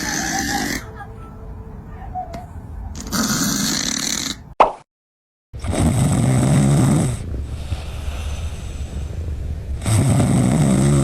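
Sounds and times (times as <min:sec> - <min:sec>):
cat snoring: 0:03.1 - 0:04.4, 0:05.6 - 0:08.4, 0:09.8 - 0:11.0
cat breathing out: 0:07.4 - 0:09.3.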